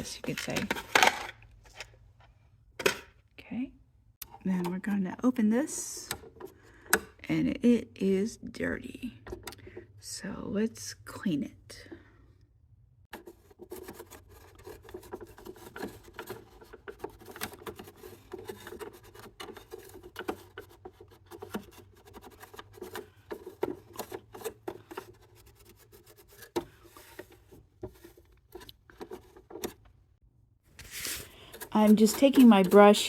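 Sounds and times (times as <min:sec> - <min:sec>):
brush scrubbing in machine: 0:30.9 - 0:33.0.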